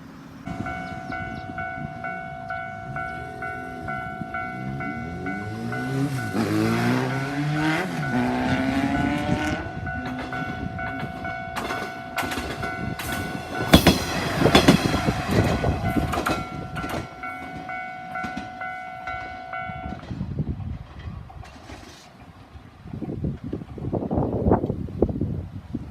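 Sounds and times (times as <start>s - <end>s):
train wheels clattering over rails: 0.0s - 24.0s
level crossing bell ringing: 0.5s - 20.0s.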